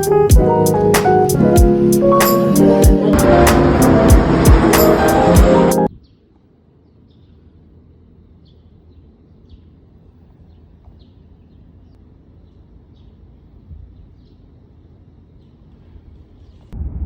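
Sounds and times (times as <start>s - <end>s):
background music with beat: 0.0s - 5.9s
low hum: 0.5s - 6.0s.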